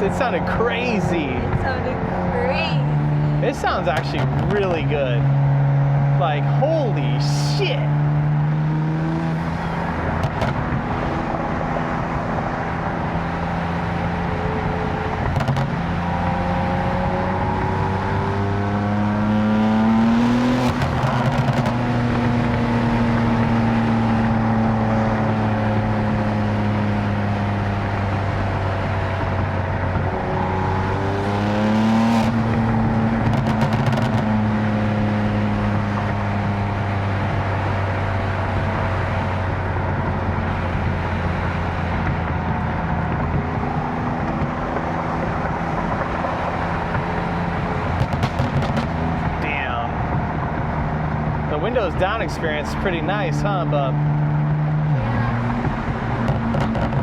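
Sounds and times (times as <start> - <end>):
car engine revving: 0.0 - 57.0
exhaust cracks: 3.4 - 5.3, 9.3 - 11.0, 19.8 - 22.7, 27.9 - 34.7, 38.3 - 57.0.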